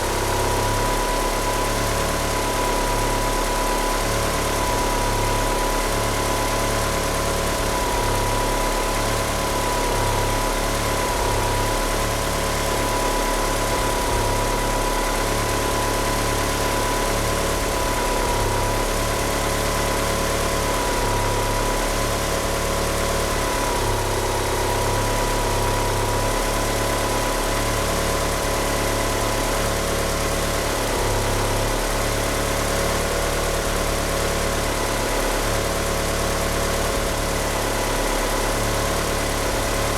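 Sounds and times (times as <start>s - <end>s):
car engine idling roughly: 0.0s - 39.9s.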